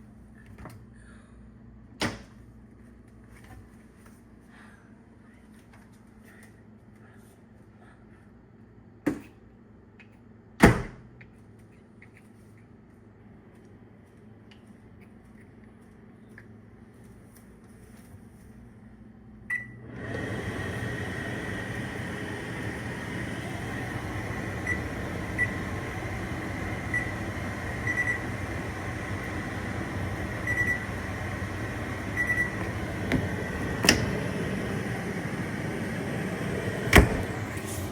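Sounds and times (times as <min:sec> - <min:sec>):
microwave oven humming: 0:18.8 - 0:37.9
microwave oven beep: 0:19.5 - 0:37.8.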